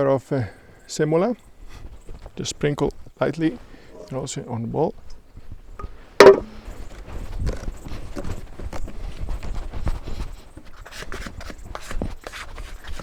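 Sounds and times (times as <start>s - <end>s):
bowl and utensils knocking on wood: 6.2s - 6.6s.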